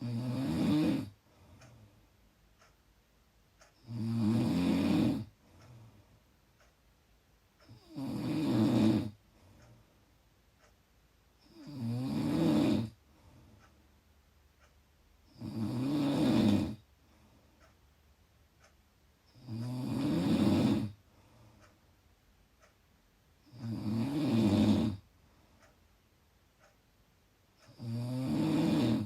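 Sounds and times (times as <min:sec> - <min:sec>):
loud snoring: 0:00.0 - 0:01.2, 0:03.8 - 0:05.3, 0:07.7 - 0:09.2, 0:11.4 - 0:13.0, 0:15.3 - 0:16.8, 0:19.3 - 0:21.0, 0:23.4 - 0:25.0, 0:27.7 - 0:29.0
quiet breathing: 0:00.0 - 0:02.8, 0:03.5 - 0:06.8, 0:07.6 - 0:22.8, 0:23.4 - 0:26.8.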